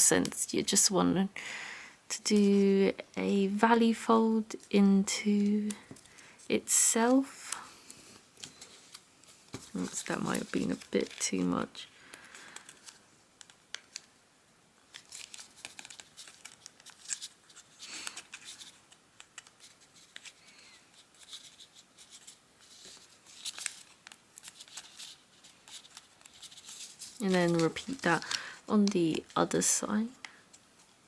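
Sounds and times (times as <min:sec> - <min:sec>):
paper crinkling: 0:07.0 - 0:14.1, 0:14.8 - 0:31.0.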